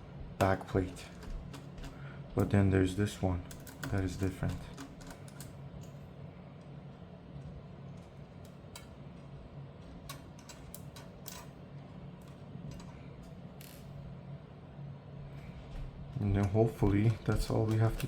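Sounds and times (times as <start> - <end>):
low steady hum: 0.0 - 18.0
small metal clicks and taps: 8.0 - 8.9, 16.4 - 18.0.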